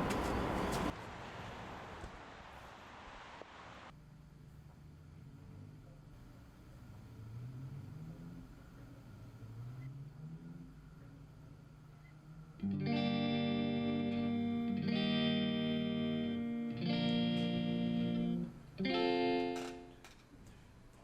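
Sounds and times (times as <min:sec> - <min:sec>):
guitar chords ringing: 0:12.6 - 0:20.0.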